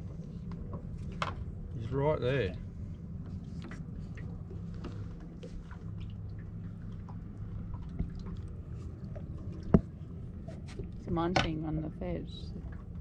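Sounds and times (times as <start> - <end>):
steady low hum: 0.0 - 13.0
water drips and clicks: 5.7 - 10.0.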